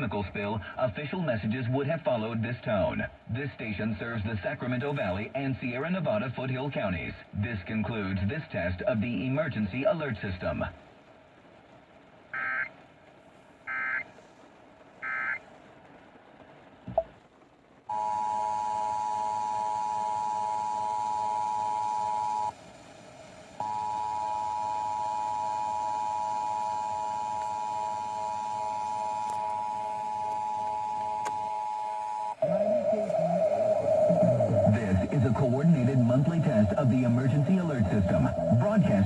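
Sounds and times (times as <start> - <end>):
hiss: 13.1 - 16.7, 21.5 - 25.6
warbling digital data bursts: 15.0 - 15.4.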